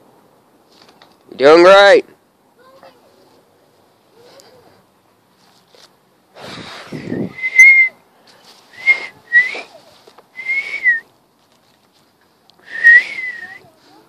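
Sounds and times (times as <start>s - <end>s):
breathy rustle: 4.1s - 7.3s, 8.1s - 12.2s
person whistling short notes: 7.1s - 8.0s, 8.7s - 9.7s, 10.4s - 11.1s, 12.6s - 13.7s.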